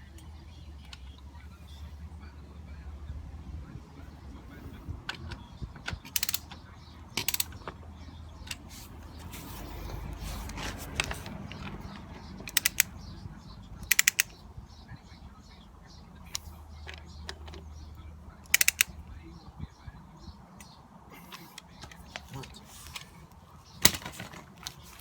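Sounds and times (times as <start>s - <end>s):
torque wrench clicking: 6.0s - 6.5s, 7.2s - 7.6s, 12.5s - 12.9s, 13.8s - 14.3s, 18.5s - 18.9s.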